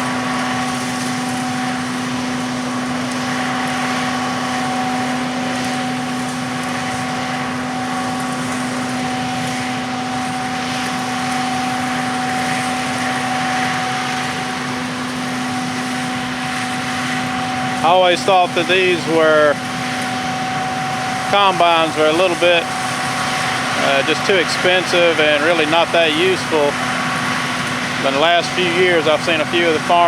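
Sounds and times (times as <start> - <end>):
harvesting machinery engine drone: 0.0 - 30.0
high-pitched hum: 10.1 - 30.0.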